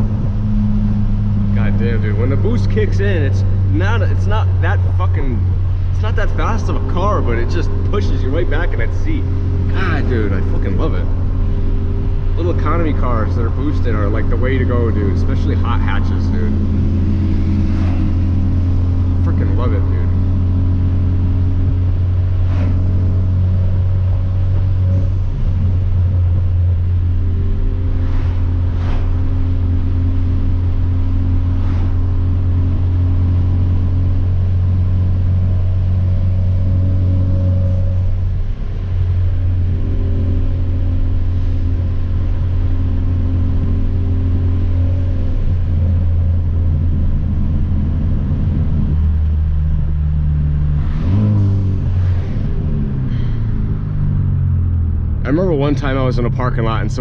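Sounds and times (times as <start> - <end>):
car engine drone: 0.0 - 57.0.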